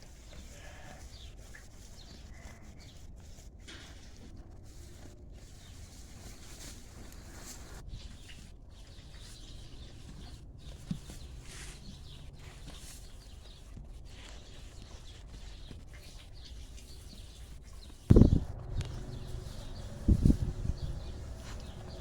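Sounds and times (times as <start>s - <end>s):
steady low rumble: 18.1s - 22.0s.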